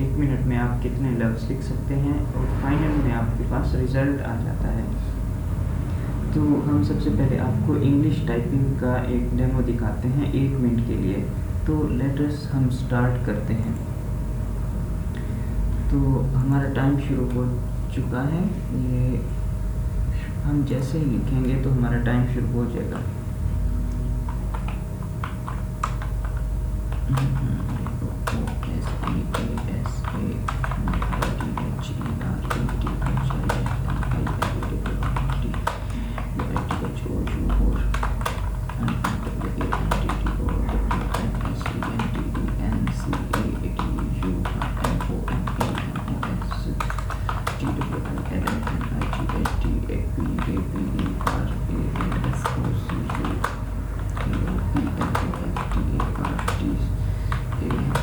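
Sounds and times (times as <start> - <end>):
faint steady hum: 0.0 - 58.0
fast keyboard typing: 24.2 - 58.0.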